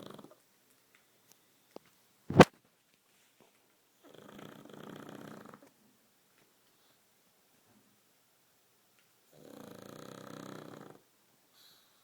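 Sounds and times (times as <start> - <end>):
pet snoring: 4.1 - 5.6, 9.3 - 11.1.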